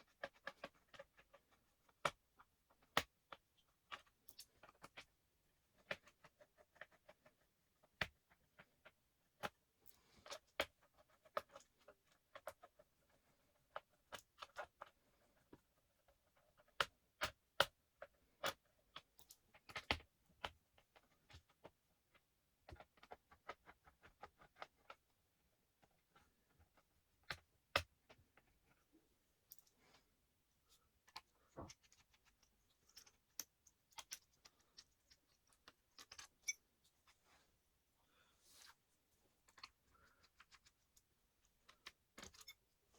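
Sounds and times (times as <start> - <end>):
laptop parts clicking and tapping: 0.0 - 5.1, 10.2 - 25.1, 31.0 - 36.6, 39.4 - 42.7.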